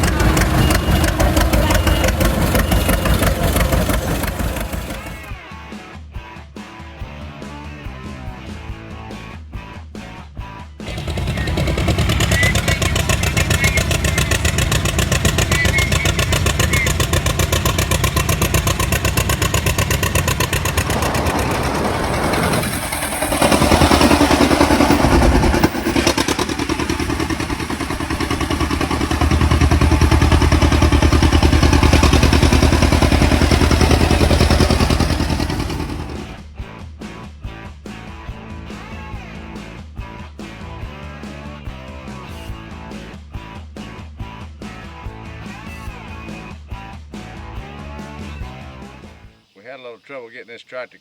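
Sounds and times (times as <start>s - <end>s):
tractor engine running: 0.0s - 5.4s, 10.8s - 36.5s.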